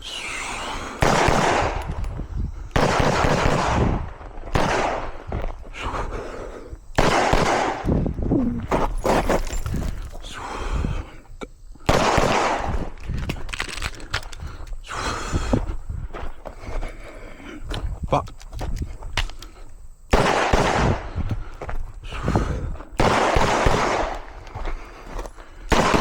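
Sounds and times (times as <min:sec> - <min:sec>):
handgun shots echoing: 0:02.8 - 0:05.2, 0:07.0 - 0:08.0, 0:23.0 - 0:24.3, 0:25.7 - 0:26.0.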